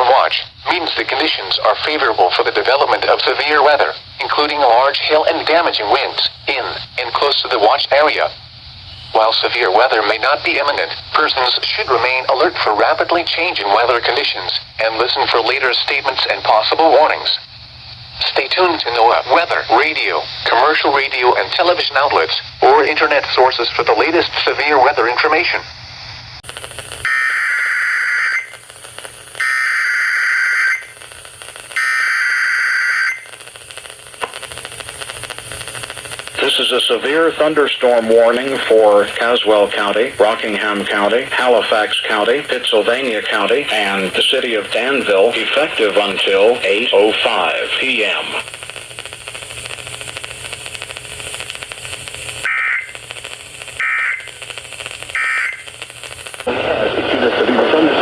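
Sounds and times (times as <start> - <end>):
crackle: 0.0 - 58.0
radio hiss and hum: 0.0 - 58.0
shrill data tones: 27.0 - 48.4, 52.4 - 56.8
warbling digital data bursts: 53.7 - 55.8.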